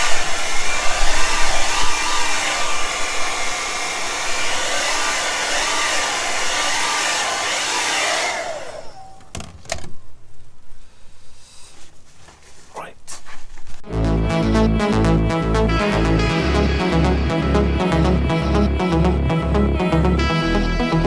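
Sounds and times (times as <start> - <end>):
hot-air blower running: 0.0 - 9.3.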